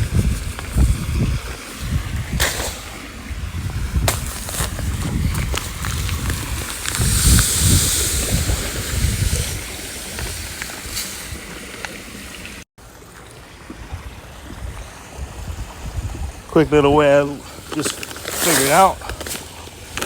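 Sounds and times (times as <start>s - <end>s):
salt pouring into water: 0.0s - 12.6s, 17.4s - 20.0s.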